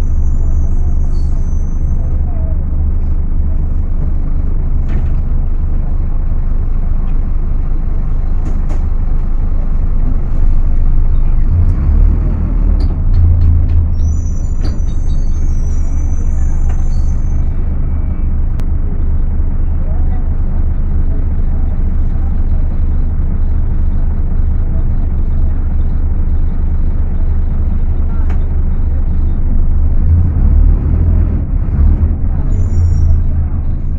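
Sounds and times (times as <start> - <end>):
thin high-pitched squeal: 0.0 - 2.5, 13.2 - 18.1
bus diesel engine droning: 0.0 - 33.9.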